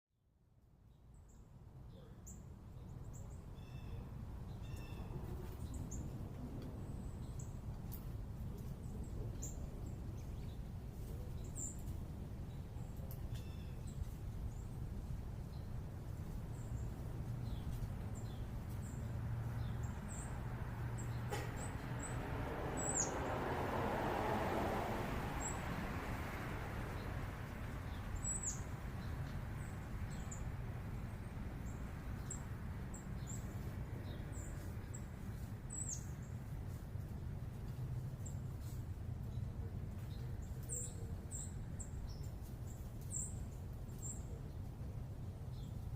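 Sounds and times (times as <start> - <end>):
low urban hum: 0.3 - 45.9
small birds chirping: 0.9 - 23.4, 25.3 - 25.7, 26.4 - 44.8
broad rushing noise: 20.0 - 27.8.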